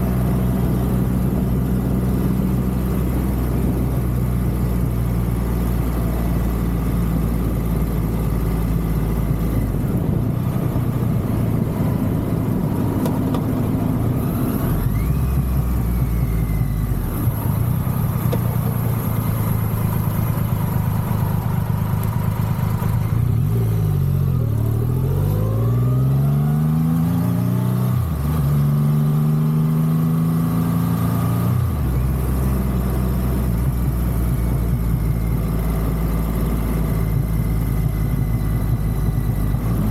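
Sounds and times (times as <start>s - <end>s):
motorcycle engine revving: 22.7s - 39.9s.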